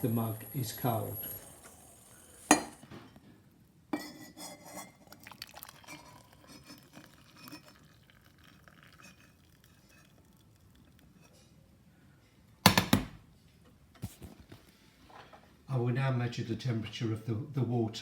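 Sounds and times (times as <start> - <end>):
clinks and taps of glass: 2.4 - 2.8
glass mug knocking: 2.5 - 2.8.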